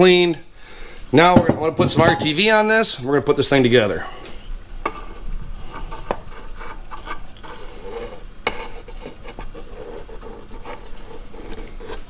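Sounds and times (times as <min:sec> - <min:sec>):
hands rubbing and scraping: 0:04.9 - 0:12.0.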